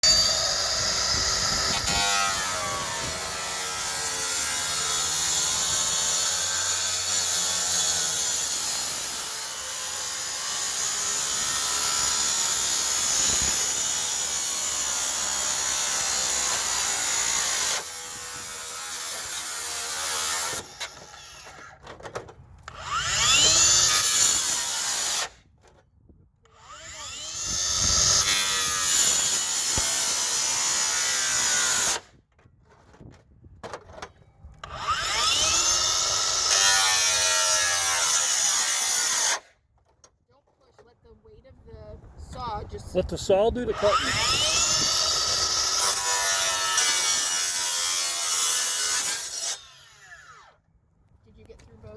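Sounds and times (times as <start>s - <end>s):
cut-off saw running: 0.0s - 21.7s, 22.7s - 25.3s, 26.6s - 32.0s, 34.6s - 39.4s, 43.6s - 50.5s.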